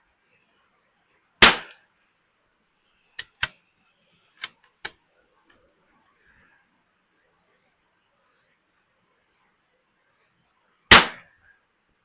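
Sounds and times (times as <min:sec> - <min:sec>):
rifle shot: 0:01.4 - 0:01.8, 0:10.9 - 0:11.3.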